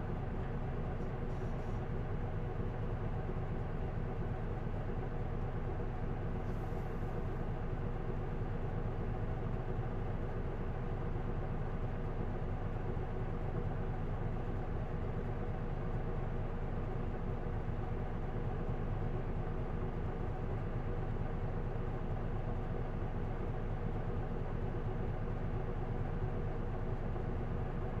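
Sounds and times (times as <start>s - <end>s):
bus diesel engine droning: 0.0s - 8.1s.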